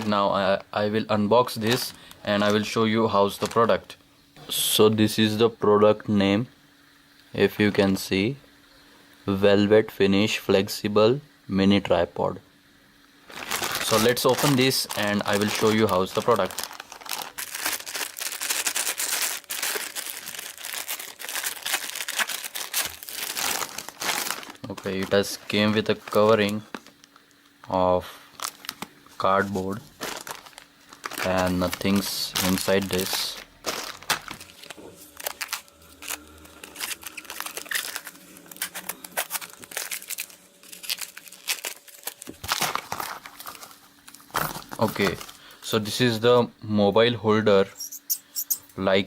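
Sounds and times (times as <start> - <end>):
packet crinkling and tearing: 1.4 - 4.0, 13.3 - 27.6, 28.3 - 45.5.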